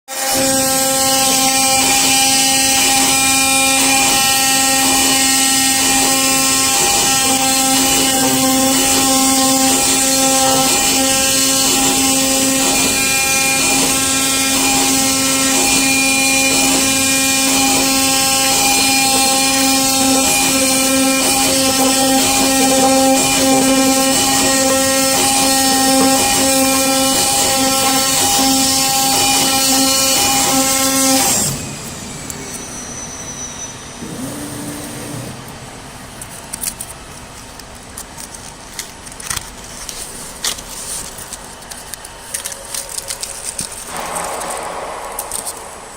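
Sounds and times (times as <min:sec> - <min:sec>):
cutting machine humming: 0:00.2 - 0:36.8.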